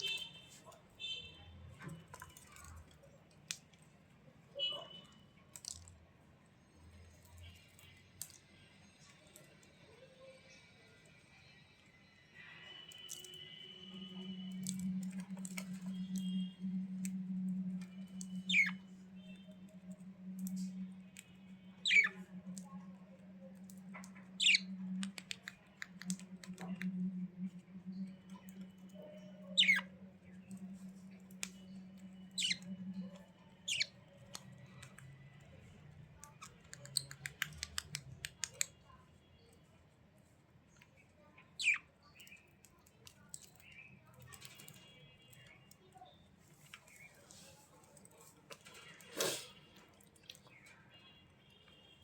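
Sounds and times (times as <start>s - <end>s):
soft warbling chatter: 0.0s - 52.0s
steady low hum: 13.9s - 34.0s.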